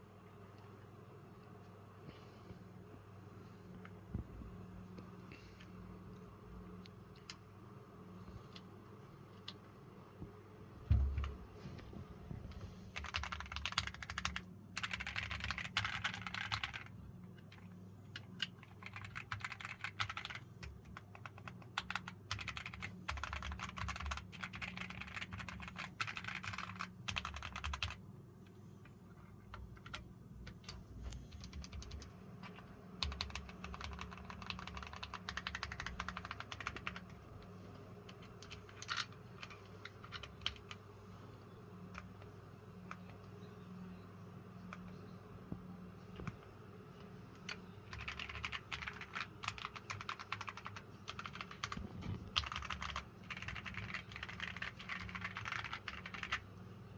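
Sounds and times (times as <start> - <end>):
faint low hum: 0.0 - 56.9
mechanical keyboard typing: 12.5 - 28.0, 29.2 - 40.8, 47.3 - 56.4.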